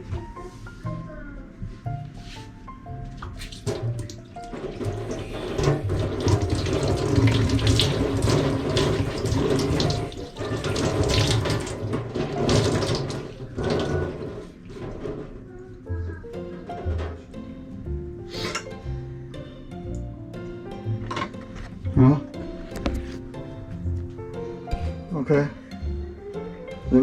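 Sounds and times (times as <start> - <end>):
tap water running into sink: 3.2 - 15.3.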